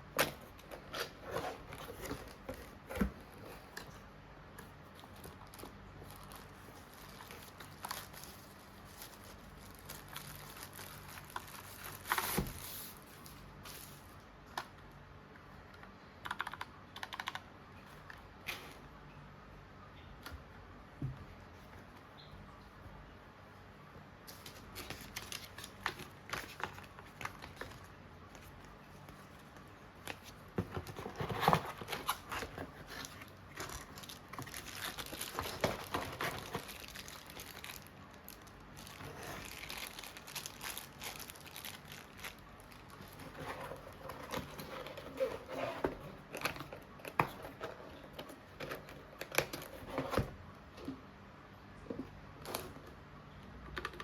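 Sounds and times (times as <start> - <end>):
plastic and paper crinkling: 0.2 - 4.0, 4.6 - 14.2, 24.3 - 50.3.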